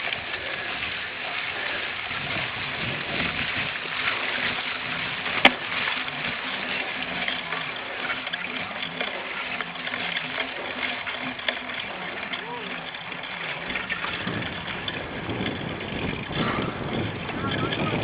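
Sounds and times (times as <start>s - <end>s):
bike tyres on ground: 0.0s - 18.0s
wind on microphone: 1.9s - 5.5s, 13.9s - 18.0s.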